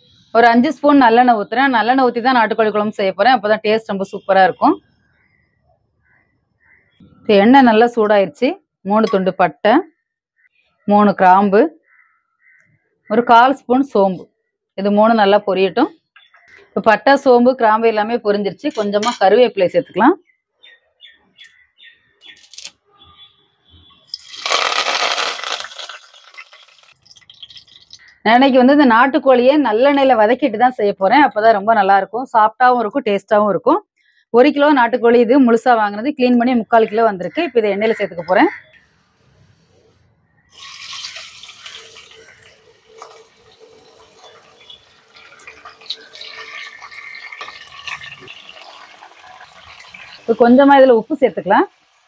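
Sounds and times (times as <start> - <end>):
leaves sputtering in hot oil: 24.1 - 28.2, 40.5 - 52.0.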